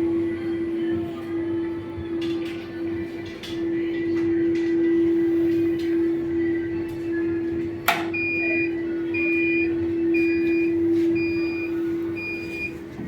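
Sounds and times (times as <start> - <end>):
steady hum: 0.0 - 13.0
washer short high beeps: 8.0 - 12.8.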